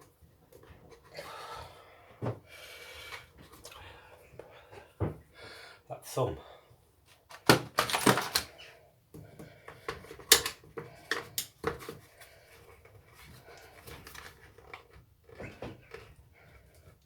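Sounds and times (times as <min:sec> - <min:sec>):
hand tools clicking and knocking: 0:07.3 - 0:08.5, 0:09.8 - 0:11.9.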